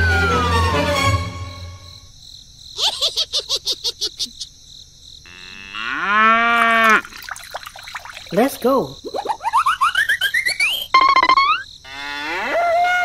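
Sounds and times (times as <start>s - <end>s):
falling whistle-like glide: 0.0s - 1.8s
rising held tone: 0.0s - 1.9s.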